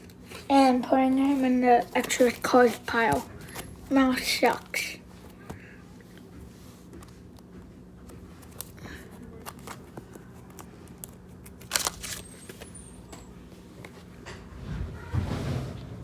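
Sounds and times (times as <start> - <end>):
cards tapping and scraping: 0.0 - 5.7, 6.3 - 12.9.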